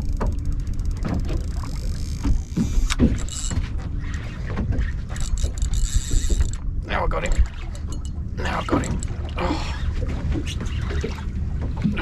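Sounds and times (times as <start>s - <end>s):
water slapping against hull: 0.0s - 12.0s.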